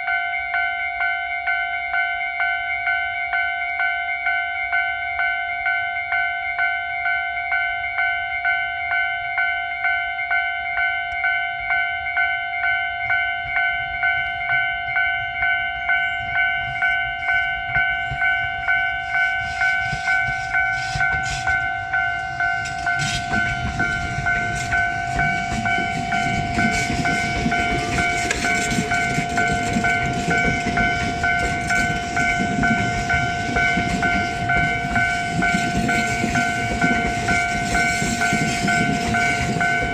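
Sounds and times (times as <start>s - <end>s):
level-crossing warning bell: 0.0s - 39.9s
train wheels clicking over rail joints: 13.0s - 39.9s.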